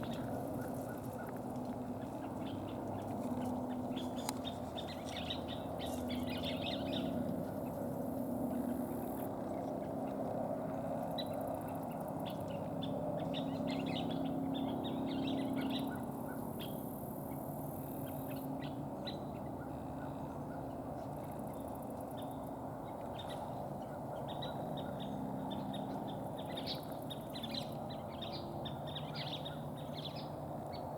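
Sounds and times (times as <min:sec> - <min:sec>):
flycatchers calling: 0:00.0 - 0:10.2.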